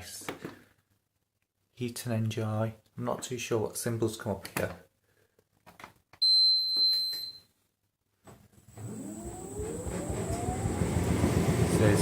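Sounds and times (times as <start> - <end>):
tumble dryer motor whine: 8.7 - 12.0.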